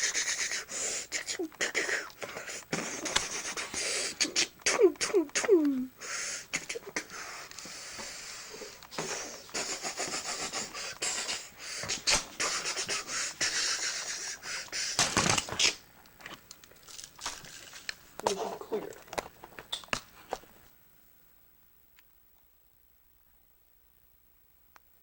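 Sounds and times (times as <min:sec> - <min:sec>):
child making gunfire mouth noises: 0:04.2 - 0:06.0.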